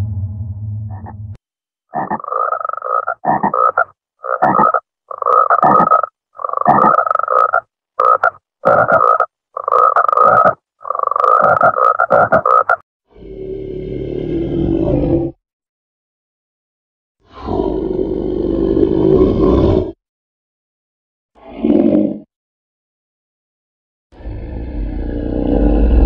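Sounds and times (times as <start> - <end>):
frog croaking: 1.9 - 12.8.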